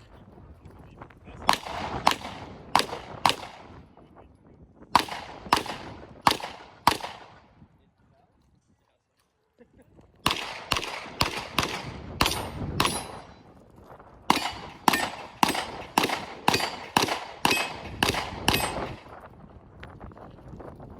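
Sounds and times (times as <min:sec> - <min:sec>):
pistol shots: 0:01.5 - 0:03.8, 0:05.0 - 0:07.5, 0:10.2 - 0:13.5, 0:14.3 - 0:19.1.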